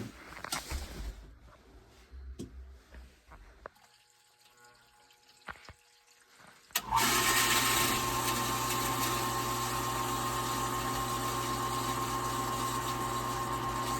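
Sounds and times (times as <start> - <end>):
well pump running hum: 6.7 - 13.9.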